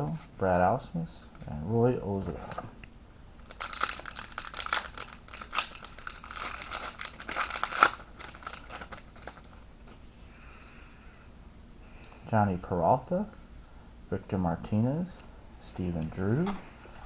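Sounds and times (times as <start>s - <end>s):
wrapper tearing and crinkling: 3.4s - 9.6s.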